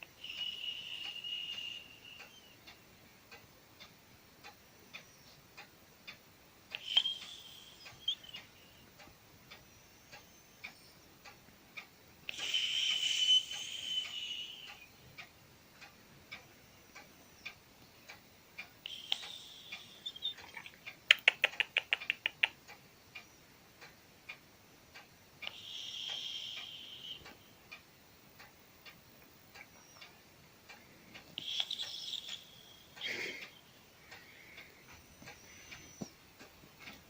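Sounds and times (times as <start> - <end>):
clock ticking: 0.0 - 37.0
cat breathing with high whistle: 6.7 - 8.6, 12.3 - 14.9, 25.4 - 27.4, 31.4 - 36.1.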